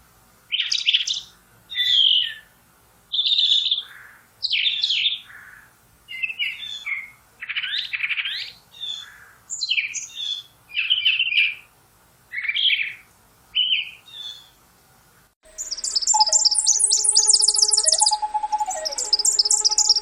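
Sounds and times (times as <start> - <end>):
bird singing short phrases: 15.5 - 20.0
rapid high bird twittering: 15.5 - 20.0
whistled bird tones: 15.5 - 20.0.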